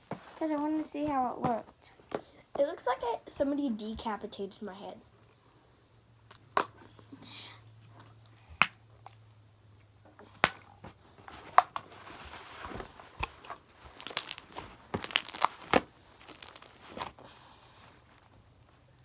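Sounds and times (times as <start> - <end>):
slime clicking and popping: 13.9 - 16.8.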